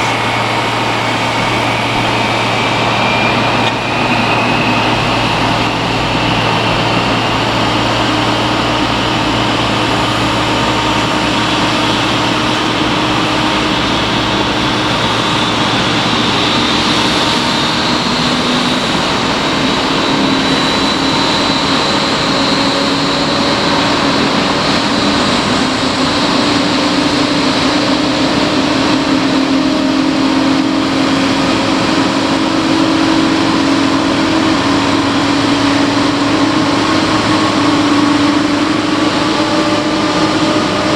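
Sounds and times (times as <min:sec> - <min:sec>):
jet engines running: 0:00.0 - 0:40.9.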